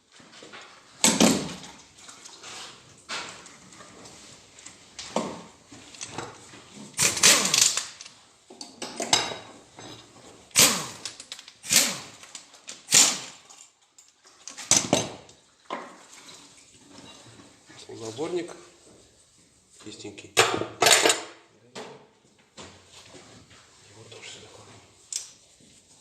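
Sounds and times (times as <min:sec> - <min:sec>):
wrenches and metal parts clanking: 0:00.3 - 0:15.4, 0:16.0 - 0:18.4, 0:20.4 - 0:21.5.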